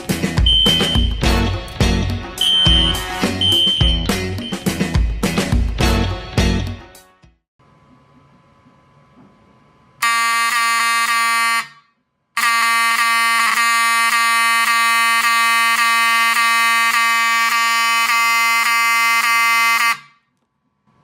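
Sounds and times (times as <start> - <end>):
fire alarm horn buzzing: 0.4 - 1.7, 2.4 - 4.7, 10.0 - 20.3.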